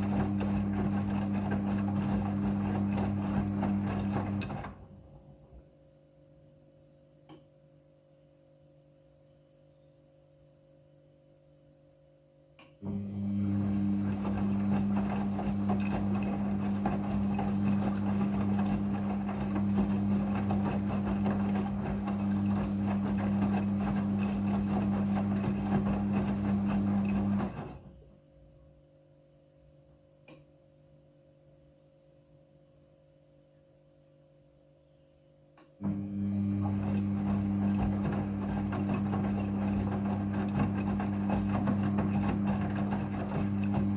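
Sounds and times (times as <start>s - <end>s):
washing machine humming: 0.0s - 5.7s, 12.8s - 28.2s, 35.8s - 43.9s.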